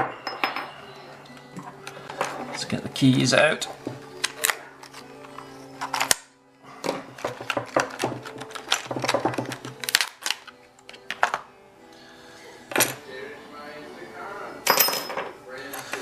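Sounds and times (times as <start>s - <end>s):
lock and keys clattering: 7.1s - 11.4s.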